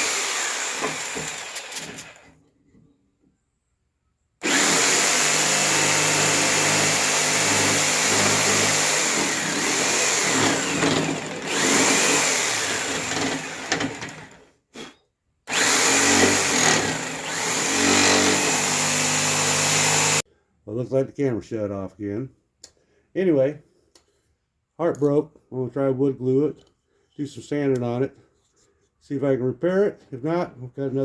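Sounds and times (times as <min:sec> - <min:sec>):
electric saw cutting wood: 0:00.0 - 0:02.4, 0:04.4 - 0:14.4, 0:15.5 - 0:20.2.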